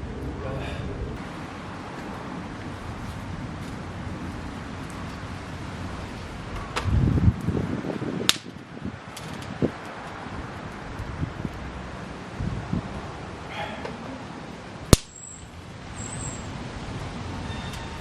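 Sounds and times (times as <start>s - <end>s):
wind buffeting microphone: 0.0s - 13.4s
wood fire burning: 1.1s - 12.4s, 14.8s - 16.2s
fire popping: 2.0s - 11.7s, 14.9s - 15.4s.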